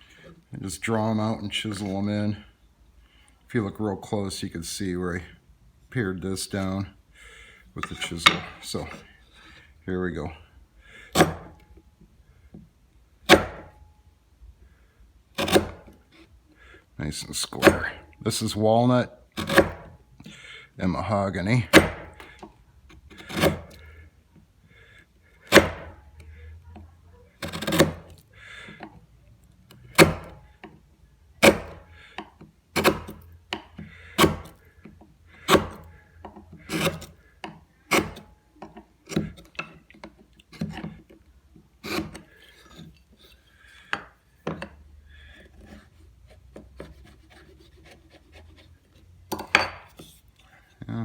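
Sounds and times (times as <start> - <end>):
chisel blade scraping: 7.8 - 9.1, 11.1 - 11.7, 15.4 - 16.3, 17.4 - 18.6, 19.4 - 20.0, 21.7 - 24.0, 25.4 - 26.1, 27.4 - 28.7, 29.7 - 30.5, 31.4 - 34.8, 35.4 - 41.1, 41.8 - 50.8
chisel knocks on wood: 13.3 - 13.7, 21.7 - 22.1, 25.5 - 26.0, 30.0 - 30.4.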